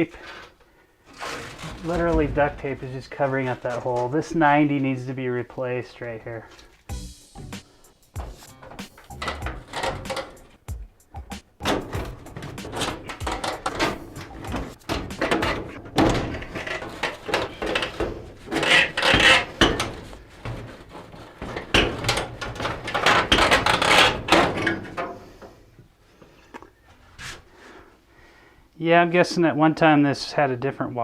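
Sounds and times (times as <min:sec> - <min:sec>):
metal scraping: 0:00.0 - 0:05.1, 0:06.5 - 0:25.5
metal pipe clanking and knocking: 0:01.4 - 0:04.2, 0:06.9 - 0:25.5.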